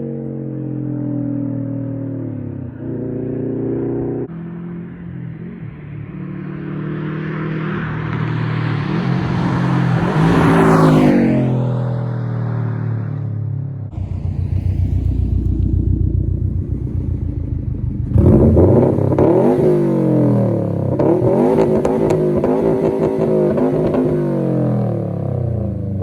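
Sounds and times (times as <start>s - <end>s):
car engine revving: 1.8s - 26.0s
exhaust crackles: 13.9s - 19.7s.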